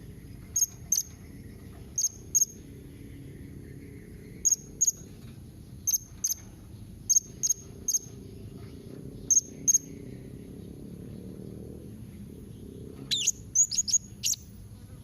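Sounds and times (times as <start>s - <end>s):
faint low rumble: 0.0s - 15.0s
parrot chirping: 13.1s - 14.5s.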